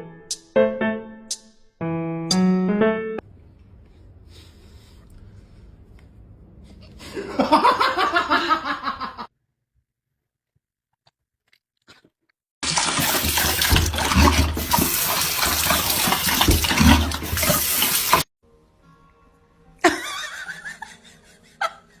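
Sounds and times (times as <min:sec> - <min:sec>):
loud rushing water: 0:12.6 - 0:18.2.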